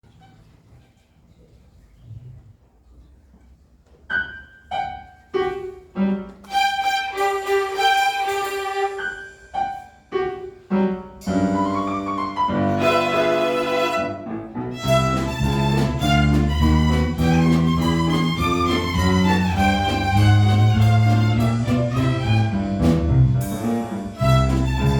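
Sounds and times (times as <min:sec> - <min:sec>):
violin ensemble playing: 0:06.4 - 0:09.2, 0:11.5 - 0:24.9
lower string notes: 0:11.4 - 0:24.9.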